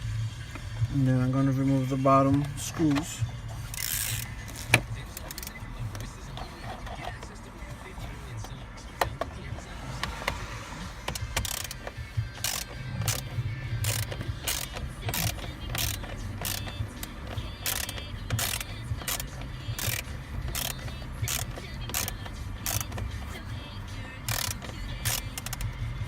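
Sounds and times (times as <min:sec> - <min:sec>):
hand ratchet clicking: 0:02.4 - 0:07.4, 0:09.9 - 0:26.0.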